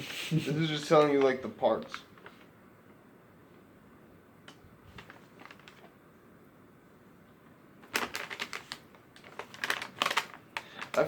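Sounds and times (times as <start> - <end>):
rustling of handled object: 4.8 - 6.0, 7.8 - 11.0.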